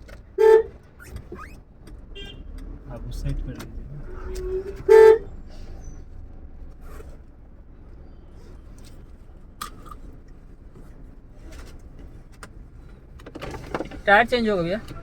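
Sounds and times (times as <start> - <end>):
traffic: 0.0 - 15.0
vehicle engine rumble: 0.0 - 15.0
car horn toot: 0.4 - 0.8, 2.1 - 2.5, 4.0 - 5.4, 14.8 - 15.0.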